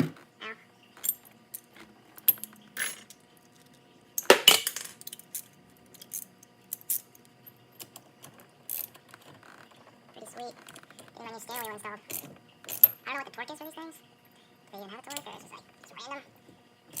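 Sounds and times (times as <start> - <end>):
metal hardware clinking: 1.0 - 3.2, 4.2 - 7.0.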